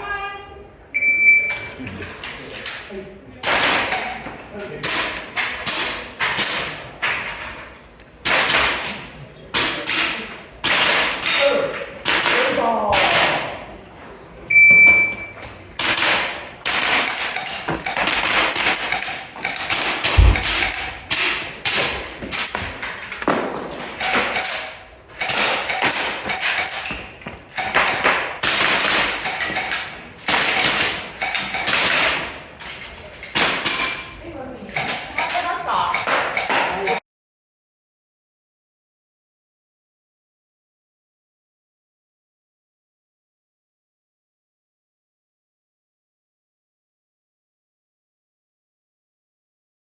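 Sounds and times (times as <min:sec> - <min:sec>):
pellets striking steel targets: 0:15.8 - 0:32.4
airsoft gun shots: 0:19.6 - 0:21.9
deep thud: 0:20.1 - 0:21.1.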